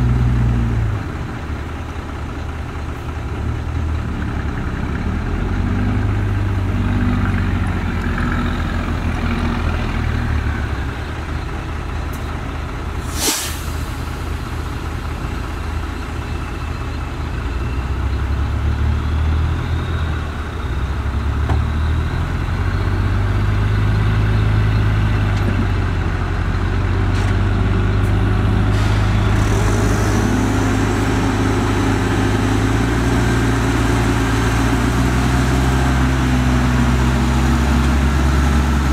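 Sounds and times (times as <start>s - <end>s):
heavy diesel engines running: 0.0s - 38.9s
sharp hiss: 13.0s - 14.3s.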